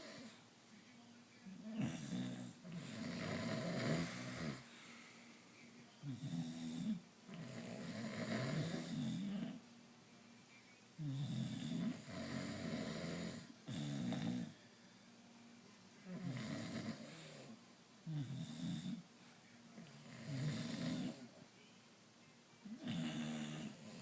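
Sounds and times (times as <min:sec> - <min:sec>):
person snoring: 0:01.6 - 0:05.0, 0:06.0 - 0:09.6, 0:11.0 - 0:14.6, 0:16.1 - 0:19.0, 0:19.8 - 0:21.3, 0:22.7 - 0:24.0.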